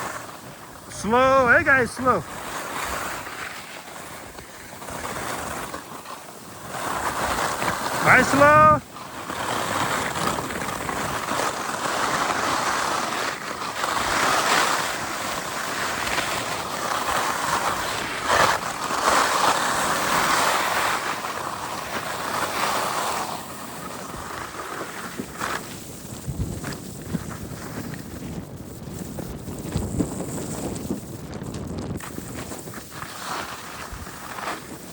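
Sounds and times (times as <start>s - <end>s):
skis scraping on snow: 0.0s - 34.9s
wind buffeting microphone: 24.0s - 34.9s.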